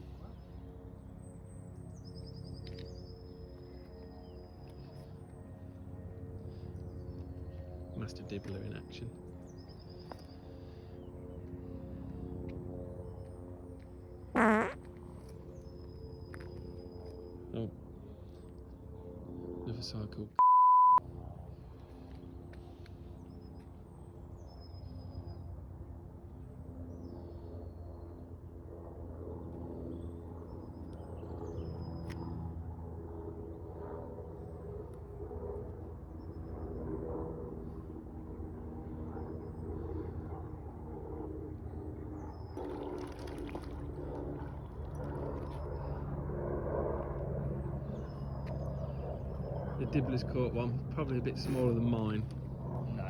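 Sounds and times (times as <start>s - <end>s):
low engine hum: 38.3s - 53.0s.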